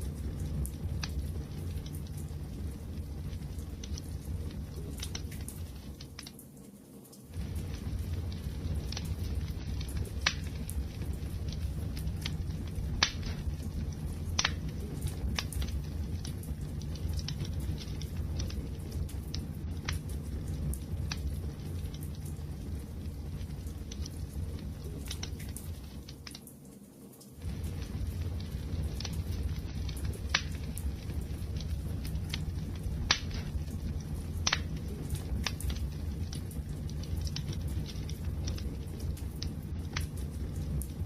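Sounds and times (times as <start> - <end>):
fire rumbling: 0.0 - 6.7, 7.3 - 41.0
fire crackling and popping: 0.0 - 41.0.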